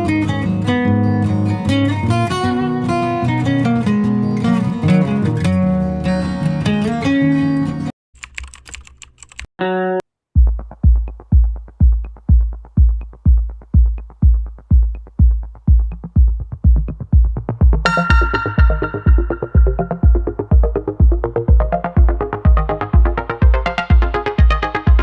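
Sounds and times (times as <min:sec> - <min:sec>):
electronic music with kick drum: 0:10.4 - 0:25.0
background music: 0:17.8 - 0:25.0.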